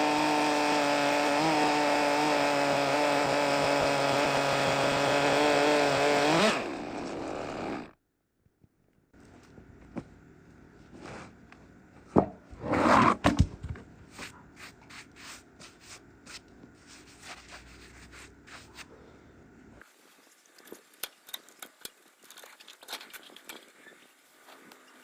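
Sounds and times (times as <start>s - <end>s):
rubbing and scraping handling noise: 9.2s - 19.1s.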